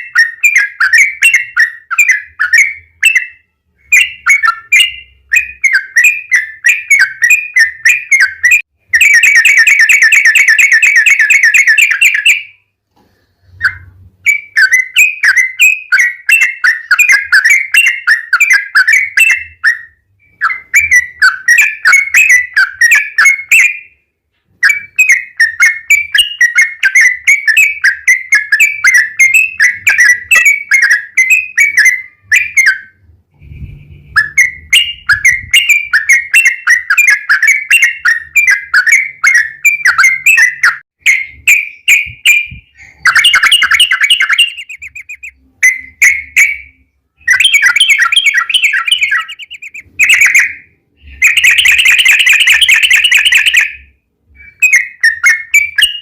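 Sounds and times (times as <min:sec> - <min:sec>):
bulbul singing whistled notes: 0:24.6 - 0:56.0.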